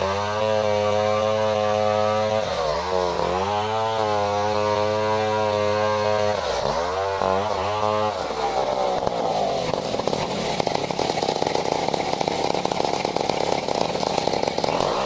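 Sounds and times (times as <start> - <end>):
chainsaw running at high revs: 0.0 - 15.0.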